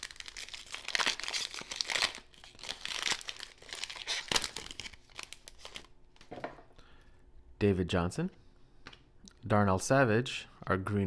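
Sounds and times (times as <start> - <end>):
card pack wrapper crinkling: 0.0 - 5.9.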